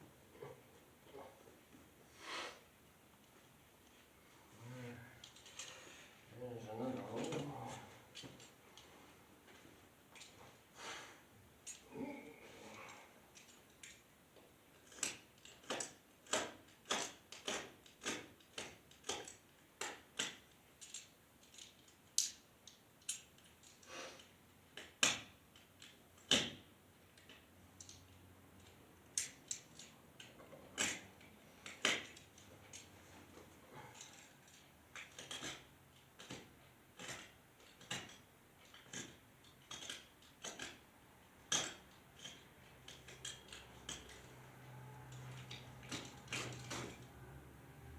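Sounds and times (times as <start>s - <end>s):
metallic clicks from hand tools: 14.8s - 26.6s, 34.0s - 40.8s, 41.4s - 44.4s.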